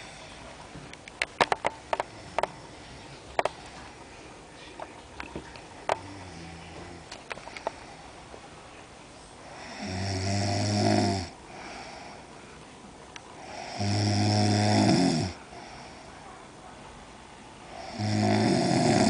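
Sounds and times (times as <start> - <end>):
woman snoring: 9.5 - 11.8, 13.4 - 15.5, 17.7 - 19.0
soft breath: 11.4 - 13.8, 15.4 - 16.4.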